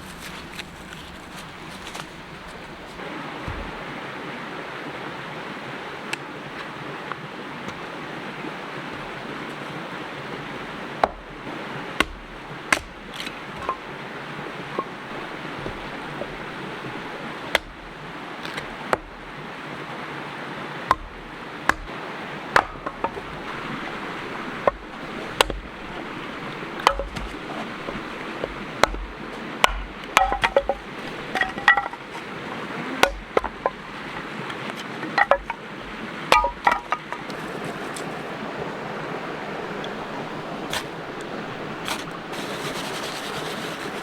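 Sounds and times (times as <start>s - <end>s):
creek running: 0.0s - 44.0s
sharp knocks and clinks: 36.3s - 37.2s.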